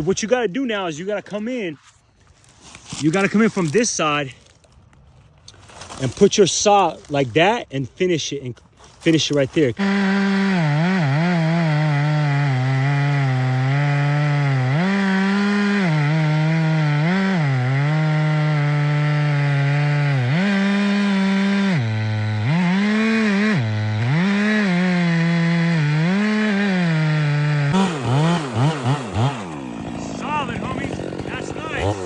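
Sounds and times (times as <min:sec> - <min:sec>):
chainsaw cutting wood: 0:02.4 - 0:04.6, 0:09.1 - 0:32.0.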